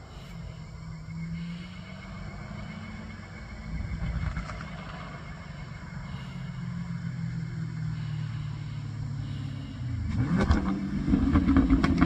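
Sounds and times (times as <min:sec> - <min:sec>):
car exhaust running low: 0:00.0 - 0:12.0
exhaust crackling and popping: 0:03.4 - 0:05.9, 0:06.8 - 0:12.0.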